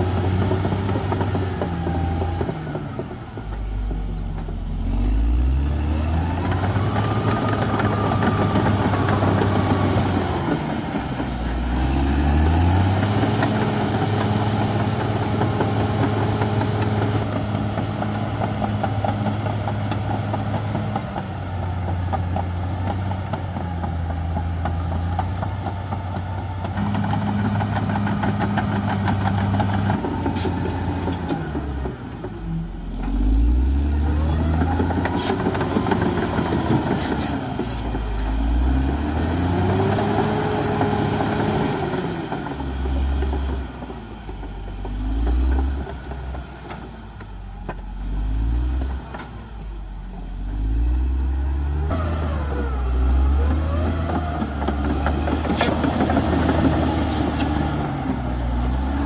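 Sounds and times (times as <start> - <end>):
bulldozer diesel engine revving: 0.0 - 59.0.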